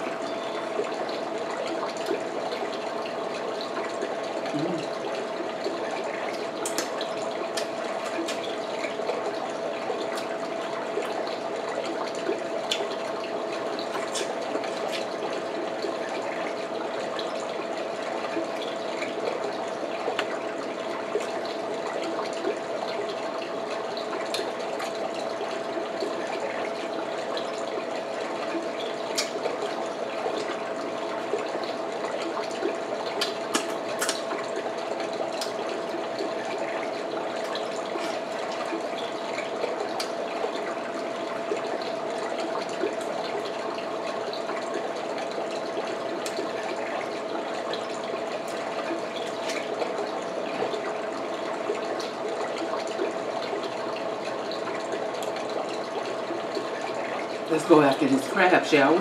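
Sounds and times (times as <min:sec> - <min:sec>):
faint constant hum: 0:00.0 - 0:59.0
eating clicks and smacks: 0:06.3 - 0:08.5, 0:10.1 - 0:10.4, 0:12.7 - 0:12.9, 0:13.9 - 0:15.1, 0:29.1 - 0:29.4, 0:33.1 - 0:34.3, 0:35.4 - 0:35.6, 0:39.9 - 0:40.2, 0:46.2 - 0:46.4.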